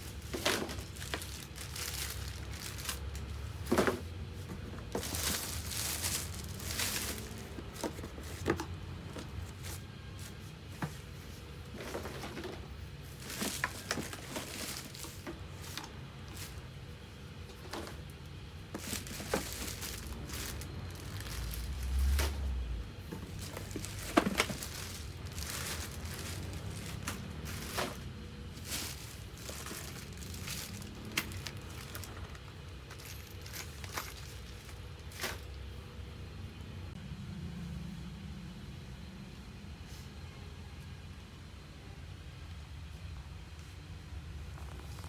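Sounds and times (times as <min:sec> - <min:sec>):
packaging crinkling: 0:00.0 - 0:03.8, 0:04.8 - 0:08.4, 0:13.1 - 0:16.6, 0:17.5 - 0:22.5, 0:23.1 - 0:35.5.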